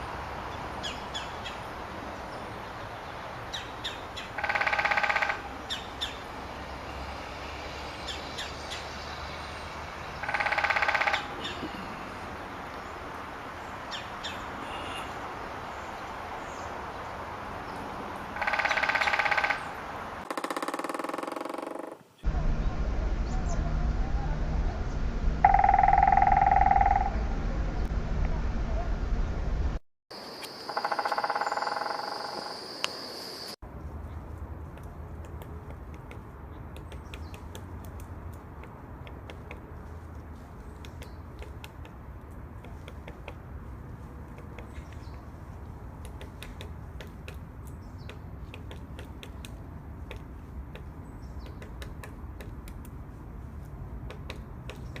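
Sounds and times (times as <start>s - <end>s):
woodpecker drumming: 3.5s - 6.2s, 10.2s - 11.8s, 18.4s - 22.5s, 25.4s - 27.3s, 30.5s - 32.6s, 34.6s - 55.0s
high downward-sliding bird calls: 18.4s - 27.9s
low background rumble: 22.3s - 29.8s.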